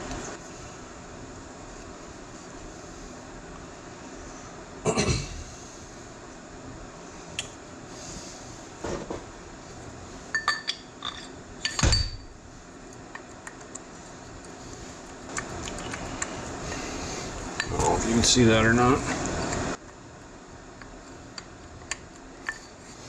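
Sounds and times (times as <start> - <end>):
steel parts knocking and clinking: 10.4 - 12.3.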